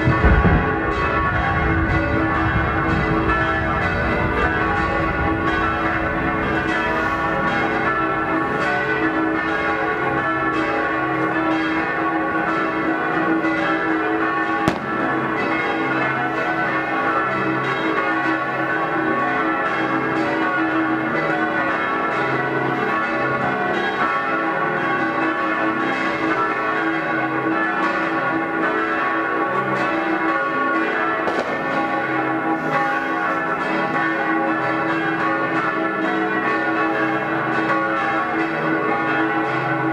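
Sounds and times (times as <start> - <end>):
firework bang: 0.0 - 5.7, 14.6 - 15.4, 31.2 - 31.7
church bells pealing: 0.0 - 39.9.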